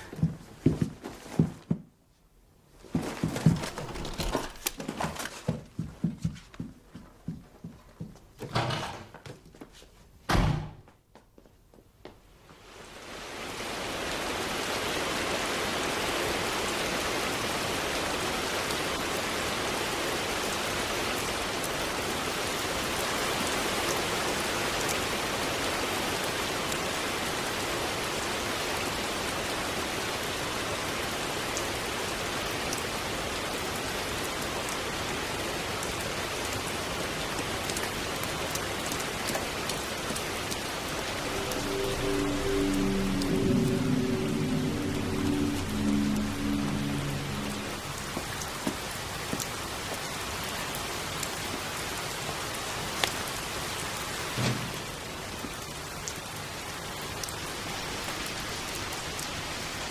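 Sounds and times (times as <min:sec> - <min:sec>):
heavy rain: 0:00.0 - 0:01.4, 0:02.8 - 0:04.9, 0:12.4 - 0:59.9
raindrop ticks: 0:37.6 - 0:50.1, 0:52.9 - 0:53.3.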